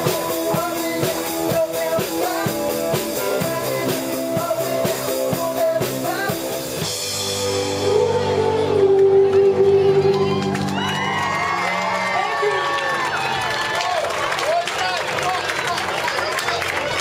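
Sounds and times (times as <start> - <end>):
person singing: 0.0 - 11.0
rock band playing: 0.0 - 14.3.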